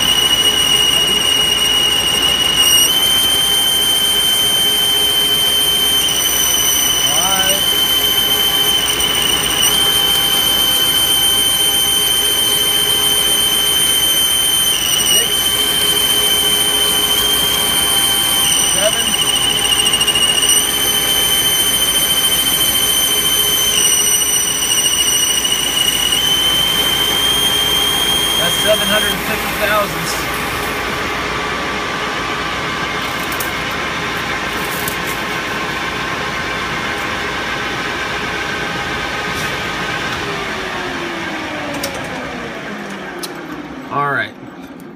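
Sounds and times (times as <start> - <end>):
metal lathe cutting with whine: 0.0 - 43.9.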